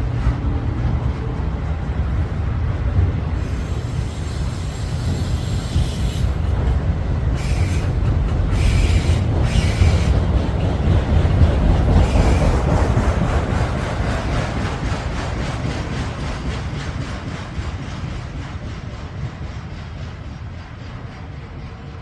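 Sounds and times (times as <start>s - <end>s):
train rumbling on rails: 0.0s - 22.0s
train wheels squealing: 3.4s - 6.5s, 7.4s - 10.3s, 12.0s - 12.7s, 18.5s - 22.0s.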